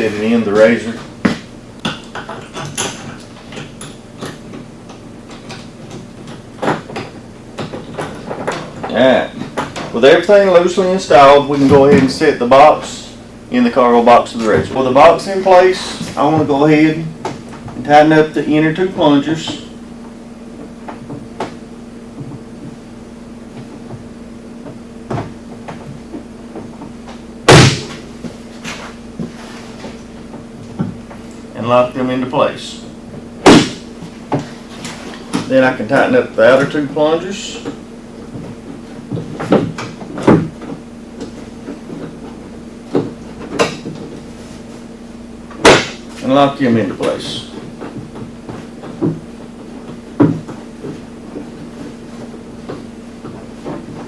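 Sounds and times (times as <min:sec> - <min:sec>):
steady low hum: 0:00.0 - 0:54.0
loud clunk: 0:27.4 - 0:28.8, 0:33.4 - 0:35.5, 0:45.5 - 0:46.2.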